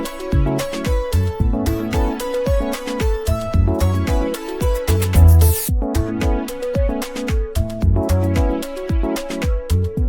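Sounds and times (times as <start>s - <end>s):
electronic dance music: 4.1s - 7.4s.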